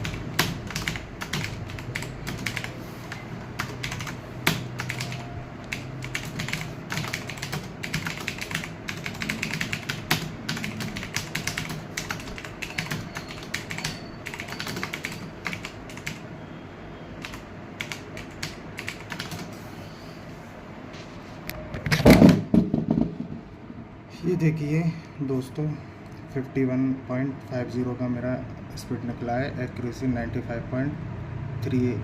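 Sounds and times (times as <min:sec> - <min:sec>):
fast typing on keyboard: 0:00.0 - 0:16.2, 0:17.2 - 0:19.5.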